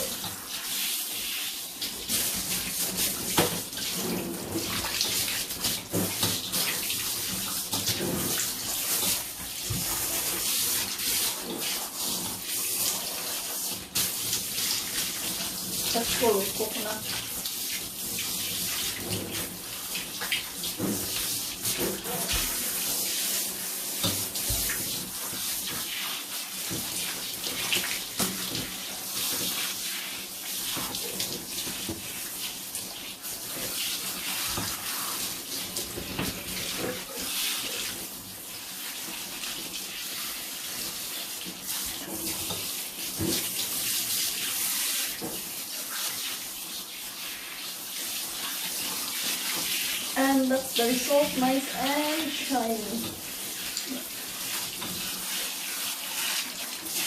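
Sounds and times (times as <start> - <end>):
water running from a tap: 0.0 - 57.0
water splashing on hair: 0.0 - 57.0.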